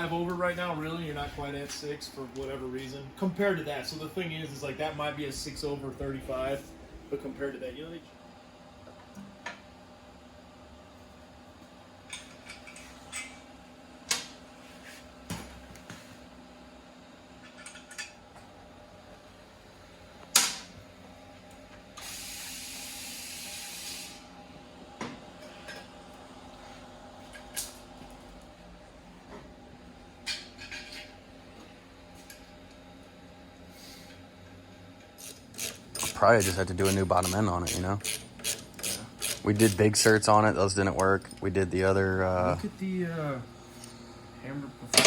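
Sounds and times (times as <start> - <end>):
faint shop hum: 0.0 - 45.0
hand tools clinking on metal: 35.6 - 40.1.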